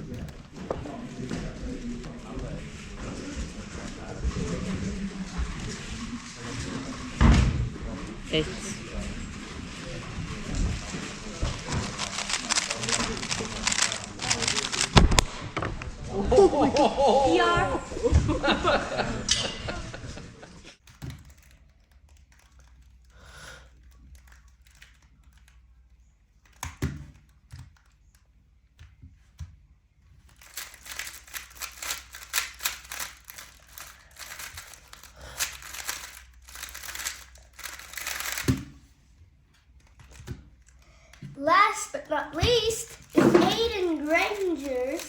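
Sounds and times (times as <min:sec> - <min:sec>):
puzzle cube plastic clicking: 0:11.4 - 0:15.3, 0:20.8 - 0:29.4, 0:30.1 - 0:38.9, 0:39.6 - 0:45.0.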